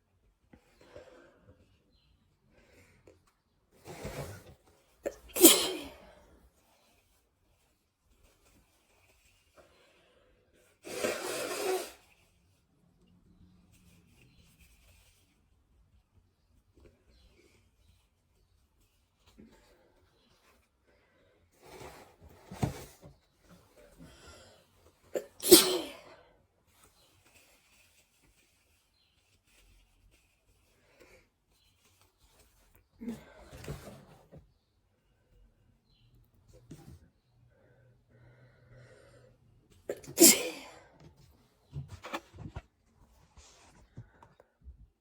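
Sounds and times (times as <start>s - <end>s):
person sneezing: 5.0s - 6.2s, 25.1s - 26.2s, 39.9s - 41.0s.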